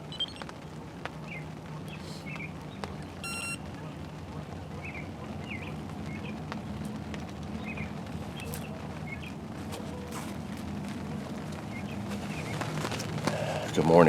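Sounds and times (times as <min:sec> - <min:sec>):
small bird chirping: 0:00.0 - 0:00.4, 0:03.2 - 0:03.6.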